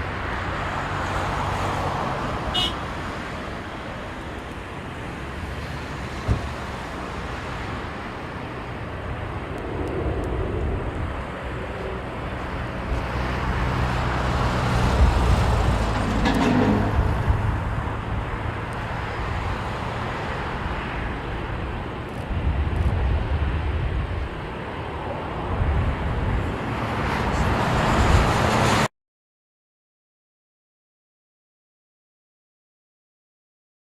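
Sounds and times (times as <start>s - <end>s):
jet engine roar: 4.1s - 28.9s.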